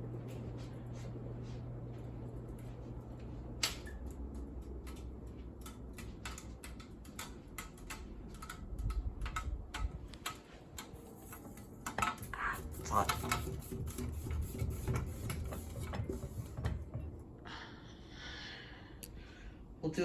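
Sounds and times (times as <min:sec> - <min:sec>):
fan motor hum: 0:00.0 - 0:20.0
fan blades clicking and rattling: 0:01.9 - 0:17.4.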